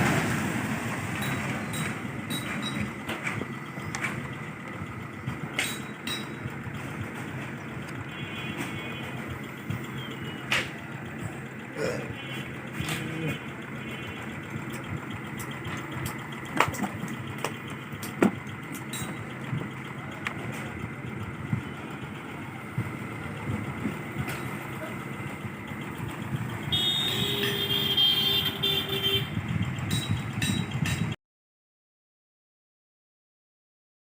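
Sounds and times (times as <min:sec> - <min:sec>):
road traffic: 0:00.0 - 0:31.2
horn-like tone: 0:08.1 - 0:09.2, 0:26.7 - 0:29.4.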